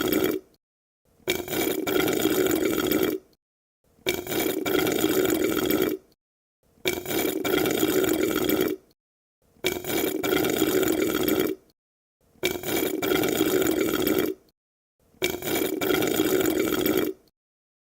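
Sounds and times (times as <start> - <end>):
sucking liquid through a straw: 0.0 - 0.6, 1.2 - 3.4, 4.0 - 6.2, 6.8 - 9.0, 9.6 - 11.8, 12.4 - 14.5, 15.1 - 17.3.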